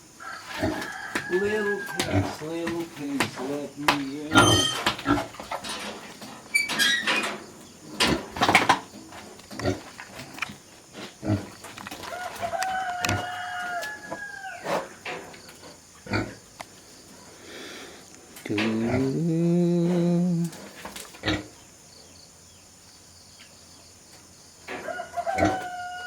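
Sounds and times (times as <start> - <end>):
rooster crowing: 0.2 - 2.5, 12.0 - 15.0, 24.7 - 26.0.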